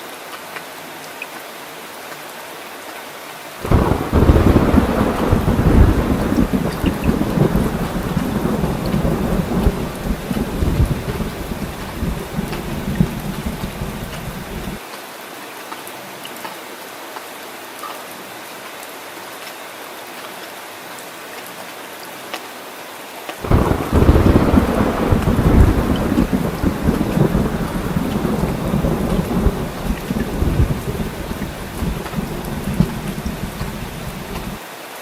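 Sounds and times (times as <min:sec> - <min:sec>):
steady rain hiss: 0:00.0 - 0:35.0
rolling thunder: 0:03.6 - 0:14.8, 0:23.4 - 0:34.6.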